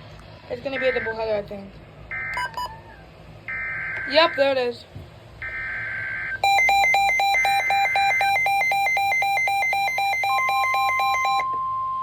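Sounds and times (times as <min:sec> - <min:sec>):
steady warning alarm tone: 0:03.5 - 0:04.6, 0:05.4 - 0:12.0
rapid electronic alarm beeping: 0:05.4 - 0:11.5.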